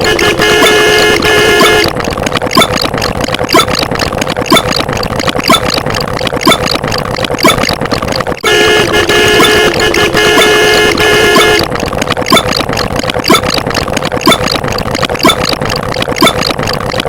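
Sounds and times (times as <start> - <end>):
steady honking tone: 0.0 - 2.2, 8.4 - 11.9
engine idling roughly: 0.0 - 17.0.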